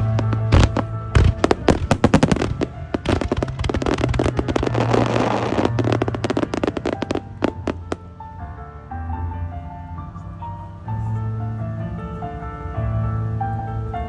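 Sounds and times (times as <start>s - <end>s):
fireworks bangs and crackles: 0.0s - 8.0s
background music: 0.0s - 14.0s.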